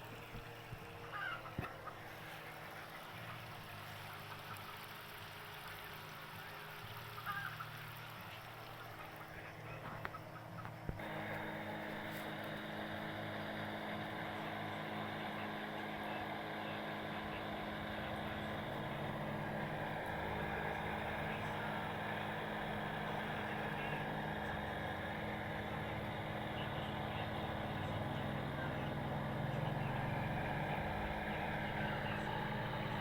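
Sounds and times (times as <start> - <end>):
sprayer pump motor humming: 0.0 - 33.0.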